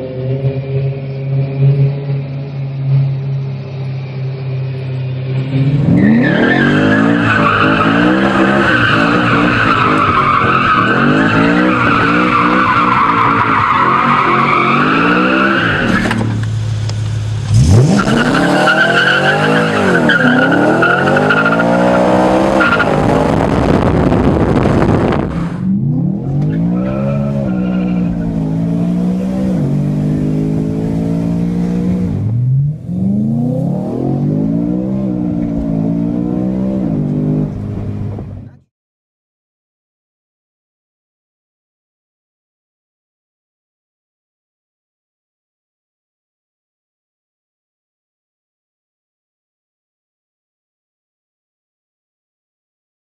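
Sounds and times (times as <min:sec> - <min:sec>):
car engine revving: 0:00.0 - 0:38.6
tyres squealing: 0:26.4 - 0:28.4.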